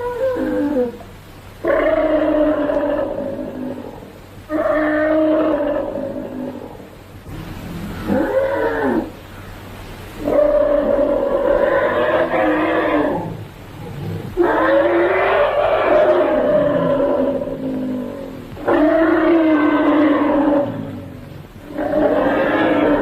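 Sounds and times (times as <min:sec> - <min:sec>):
dinosaur roaring: 0:10.2 - 0:23.0.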